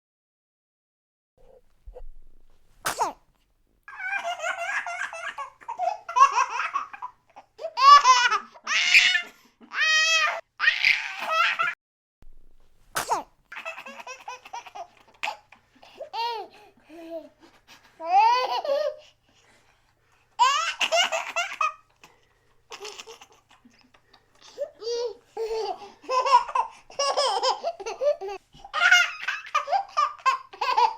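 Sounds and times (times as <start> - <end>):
baby sneezing: 2.8 - 3.2, 12.9 - 13.3
baby laughing: 3.9 - 11.8, 13.0 - 17.3, 18.0 - 19.1, 20.4 - 22.1, 22.7 - 30.9.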